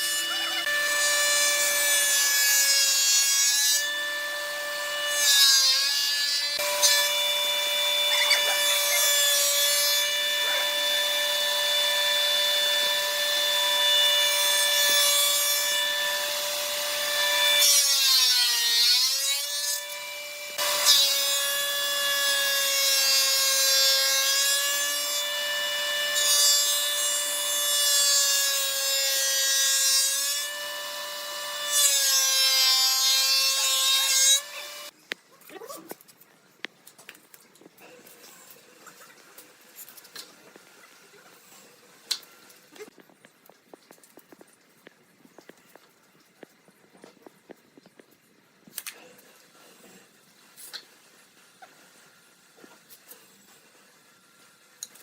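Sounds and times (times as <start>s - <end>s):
electric power saw whining: 0.0s - 17.6s, 19.5s - 22.1s, 32.7s - 35.0s
saw cutting into wood: 0.0s - 35.0s.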